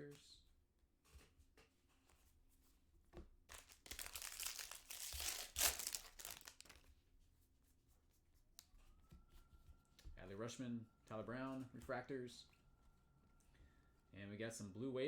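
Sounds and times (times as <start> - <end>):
foil wrapper tearing and crinkling: 3.5 - 6.9.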